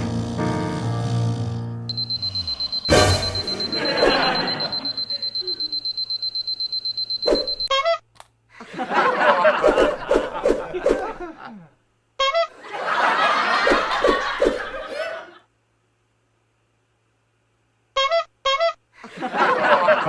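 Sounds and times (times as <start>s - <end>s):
burst of laughter: 3.5s - 5.6s, 12.5s - 15.4s, 19.0s - 20.0s.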